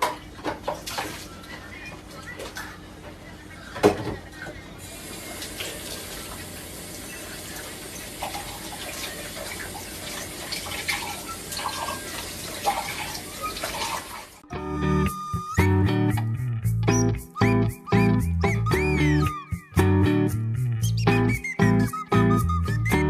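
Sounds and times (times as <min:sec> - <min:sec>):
running water rushing: 0:04.8 - 0:14.4.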